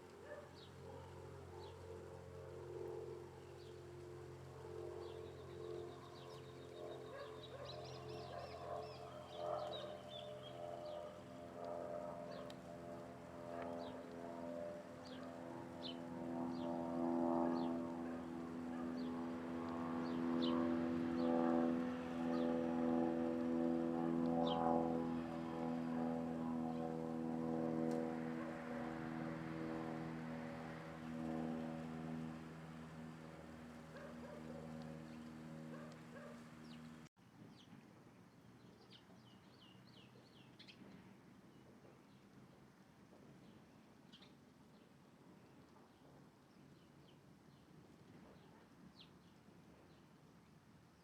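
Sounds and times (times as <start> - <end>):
low hum of held tones: 0.0 - 37.1.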